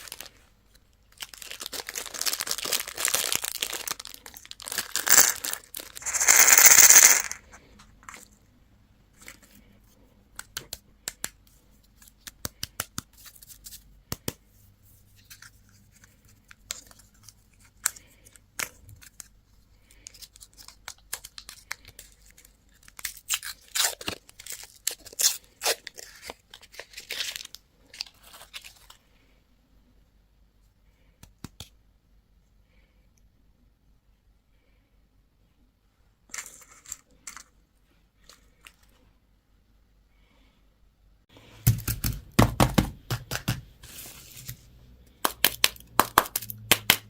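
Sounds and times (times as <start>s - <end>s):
packaging tearing and crinkling: 1.1s - 7.4s, 20.1s - 29.0s.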